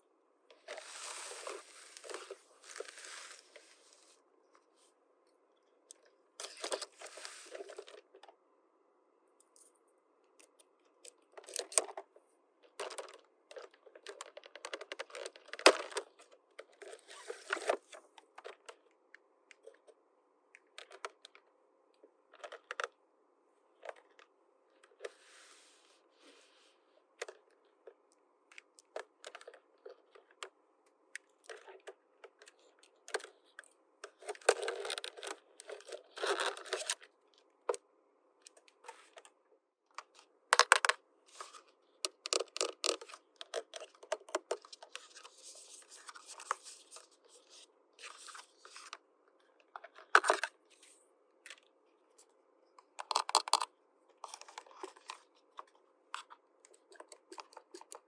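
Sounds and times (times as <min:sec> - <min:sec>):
plastic toy pieces clicking: 0:53.0 - 0:53.7.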